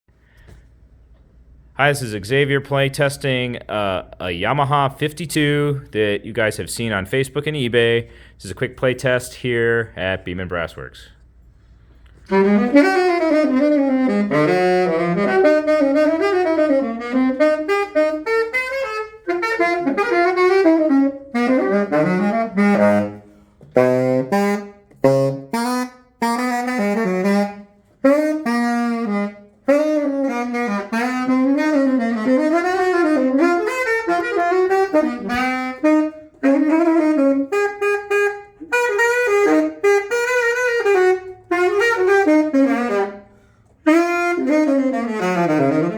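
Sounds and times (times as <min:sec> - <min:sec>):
tenor saxophone jazz runs: 0:00.2 - 0:45.9.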